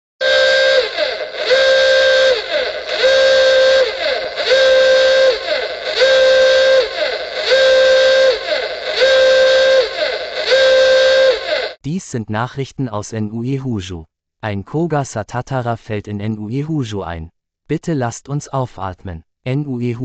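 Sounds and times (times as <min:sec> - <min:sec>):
horn-like alarm blasts: 0:00.2 - 0:11.8.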